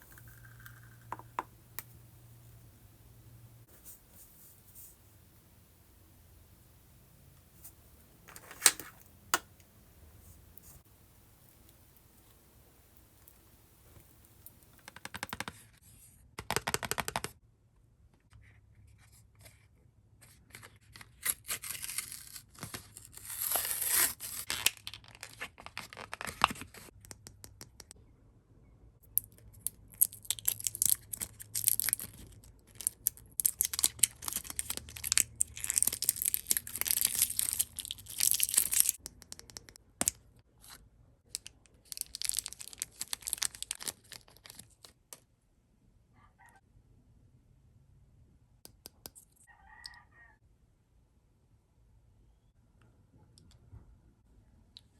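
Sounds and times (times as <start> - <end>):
packaging tearing and crinkling: 21.0 - 26.9, 30.0 - 39.0, 41.8 - 45.0.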